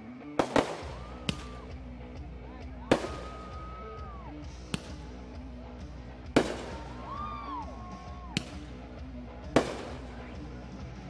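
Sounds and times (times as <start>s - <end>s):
firework bangs: 0.4s - 1.8s, 2.9s - 3.7s, 4.6s - 5.3s, 6.3s - 7.2s, 9.5s - 10.3s.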